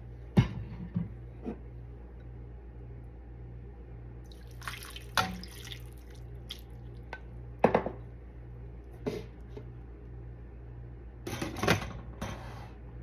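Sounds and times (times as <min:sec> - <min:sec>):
steady low hum: 0:00.0 - 0:13.0
water dripping and splashing: 0:04.3 - 0:07.1.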